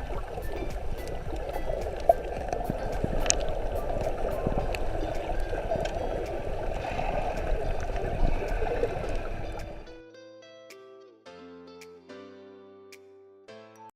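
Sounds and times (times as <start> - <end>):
muffled rushing water: 0.0 - 10.0
sharp clicks: 0.2 - 6.6.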